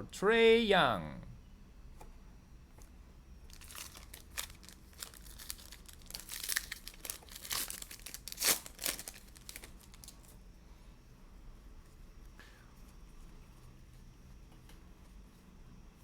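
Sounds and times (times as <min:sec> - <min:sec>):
plastic wrapper tearing and crinkling: 0:03.5 - 0:10.3.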